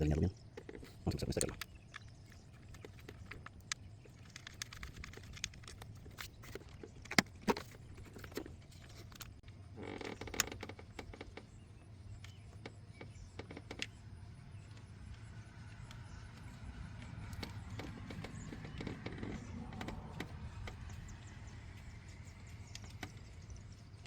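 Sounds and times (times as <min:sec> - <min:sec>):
metallic clicks and knocks of tools: 0:00.6 - 0:09.3.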